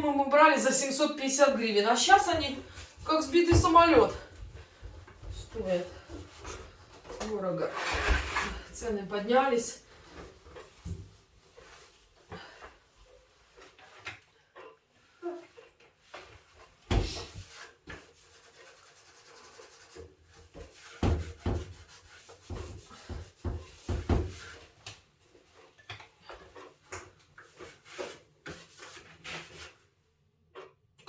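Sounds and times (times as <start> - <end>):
knocks and bumps: 2.3 - 5.7.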